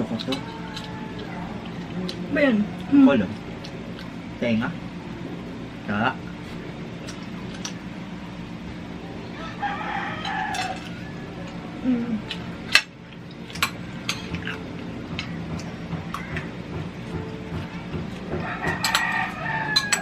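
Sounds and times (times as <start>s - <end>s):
steady low hum: 0.0s - 20.0s
rooster crowing: 0.3s - 1.8s, 9.2s - 11.7s, 18.3s - 20.0s.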